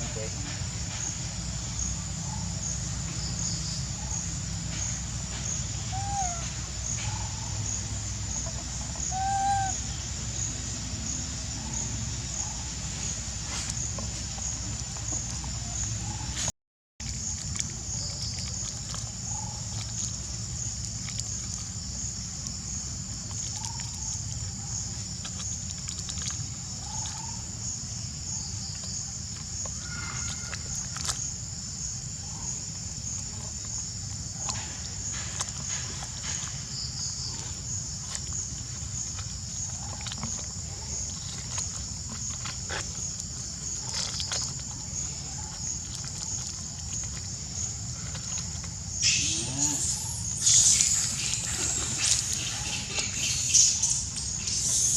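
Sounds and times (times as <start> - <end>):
low outdoor rumble: 0.0 - 54.6
high-pitched insect drone: 49.0 - 54.9.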